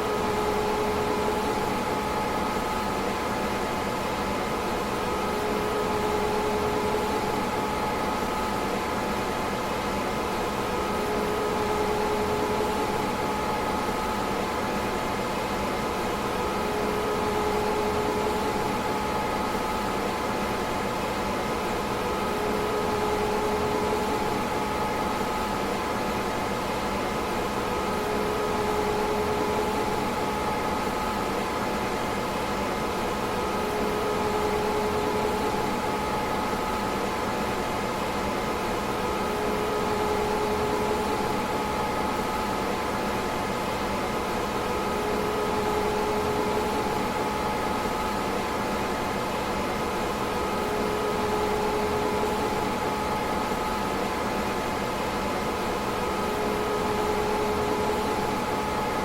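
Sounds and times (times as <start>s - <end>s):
steady whining tones: 38.5s - 59.0s.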